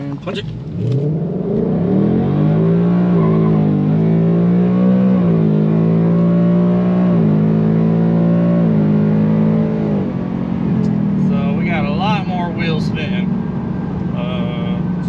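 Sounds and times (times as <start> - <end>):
car engine accelerating with gear shifts: 0.0 - 15.0.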